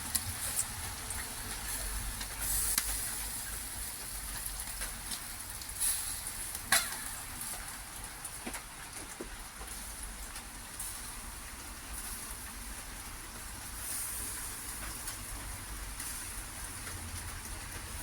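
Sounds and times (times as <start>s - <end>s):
fat popping and crackling: 0.0s - 3.3s, 6.4s - 9.7s
meat sizzling on a grill: 0.0s - 18.0s.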